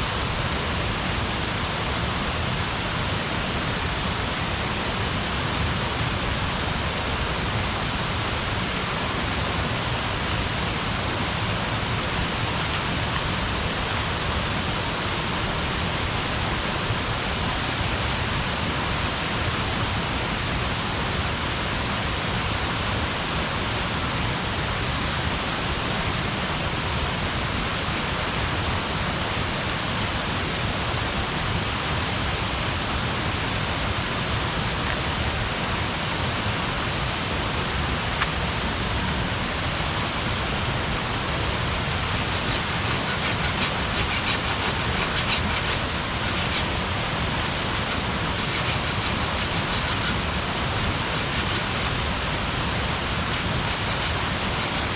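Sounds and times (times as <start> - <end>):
steady rushing noise: 0.0 - 54.9.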